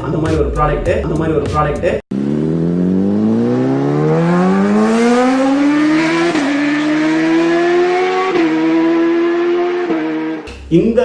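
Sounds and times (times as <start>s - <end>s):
car engine accelerating hard: 2.1s - 10.5s.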